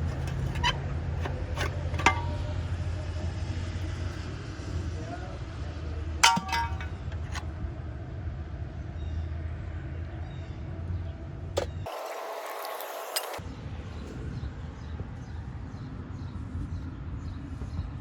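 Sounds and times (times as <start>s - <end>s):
metallic clinks and clanks: 0.0s - 2.6s, 6.2s - 7.4s.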